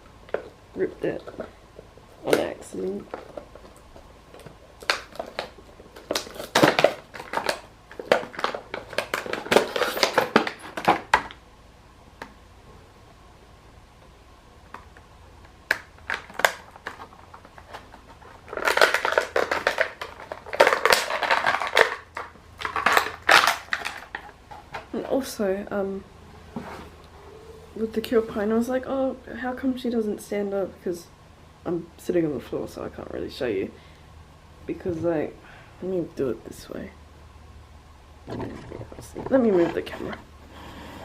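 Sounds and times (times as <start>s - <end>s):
packaging crackling rustle: 2.2s - 11.4s, 15.7s - 25.0s.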